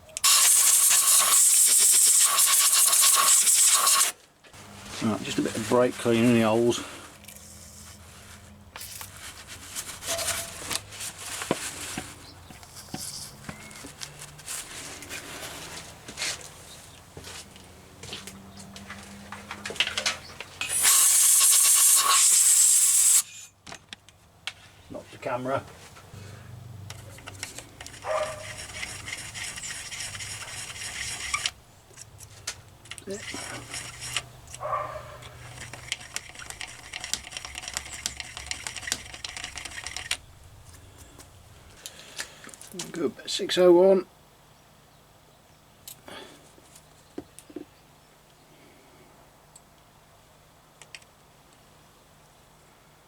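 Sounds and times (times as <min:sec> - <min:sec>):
aerosol spray hissing: 0:00.2 - 0:04.2, 0:20.7 - 0:23.3.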